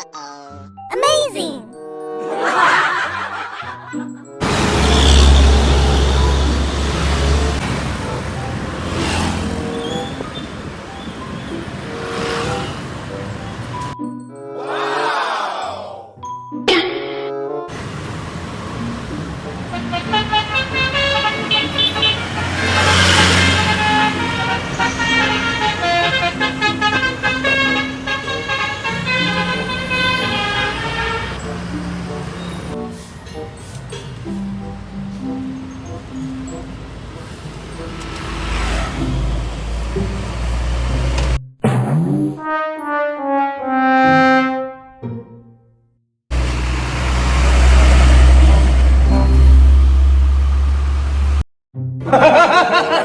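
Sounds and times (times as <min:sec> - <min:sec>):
vehicles passing: 0:02.4 - 0:14.0, 0:17.7 - 0:41.4, 0:46.3 - 0:51.5
deep engine rumble: 0:04.4 - 0:11.8, 0:36.4 - 0:41.4, 0:46.3 - 0:51.4
multi-tone bus horn playing a tune: 0:04.4 - 0:13.9, 0:17.7 - 0:32.4, 0:42.5 - 0:44.8, 0:46.3 - 0:51.4.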